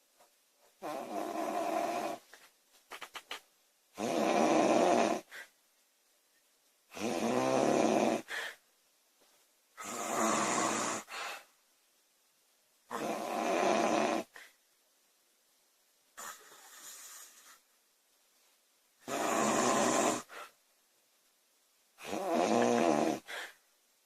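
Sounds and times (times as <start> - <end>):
woman snoring loudly: 0.8 - 2.2, 4.0 - 5.3, 6.9 - 8.3, 9.8 - 11.1, 12.9 - 14.3, 19.0 - 20.3, 22.0 - 23.5.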